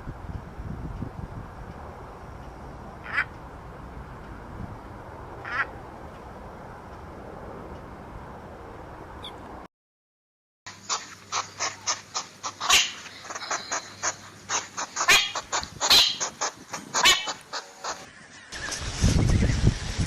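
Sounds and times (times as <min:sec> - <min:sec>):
animal giving sharp calls: 0:03.0 - 0:03.3, 0:05.4 - 0:05.8, 0:10.8 - 0:18.1.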